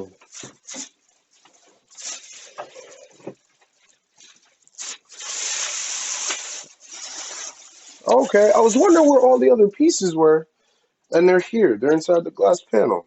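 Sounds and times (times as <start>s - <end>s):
packaging rustling: 0.2s - 9.4s.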